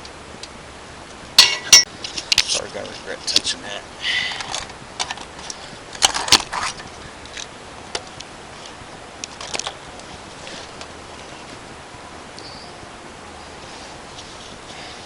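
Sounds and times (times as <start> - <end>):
metal tools clinking: 1.4 - 3.5.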